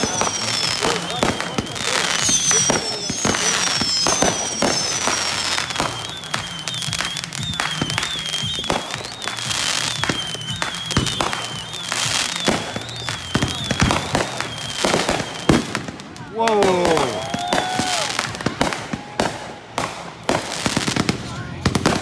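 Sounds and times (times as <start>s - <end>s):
high wavering whistle: 0.0s - 15.8s
falling firework whistles: 0.0s - 22.0s
fireworks bangs and crackles: 0.0s - 22.0s.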